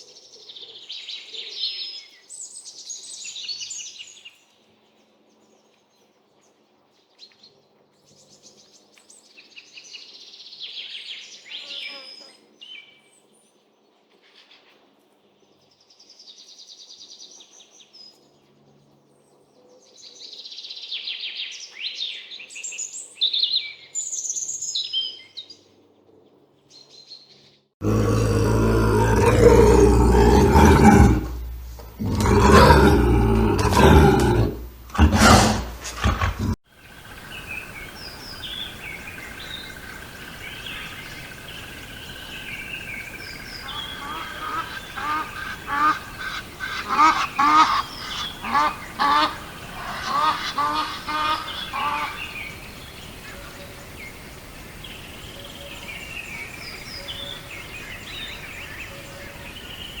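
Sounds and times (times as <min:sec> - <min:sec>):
large animal deep grunting: 0:27.8 - 0:36.6
birds calling: 0:27.8 - 1:00.0.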